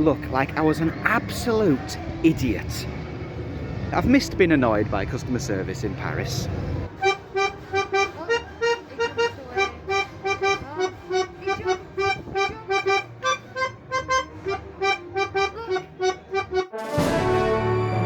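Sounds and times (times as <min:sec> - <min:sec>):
lively accordion tune: 0:06.9 - 0:18.0.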